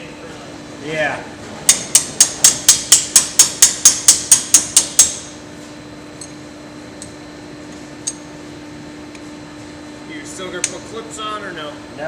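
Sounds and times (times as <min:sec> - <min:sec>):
faint steady hum: 0:00.0 - 0:12.0
hammer striking steel: 0:01.7 - 0:05.4.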